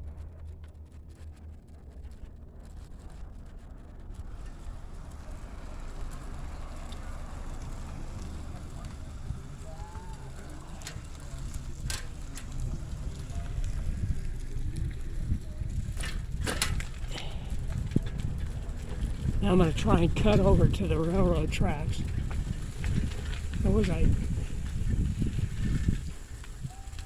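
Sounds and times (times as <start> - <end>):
bicycle rolling rumble: 0.0 - 27.0
bike clicks and bumps: 0.0 - 27.0
wind on microphone: 11.5 - 27.0.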